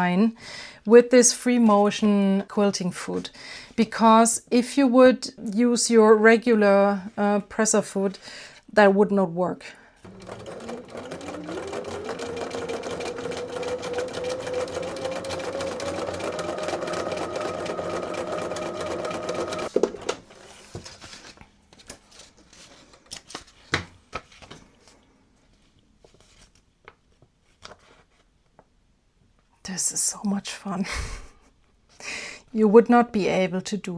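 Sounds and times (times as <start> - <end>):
sewing machine motor whine: 10.0 - 20.3.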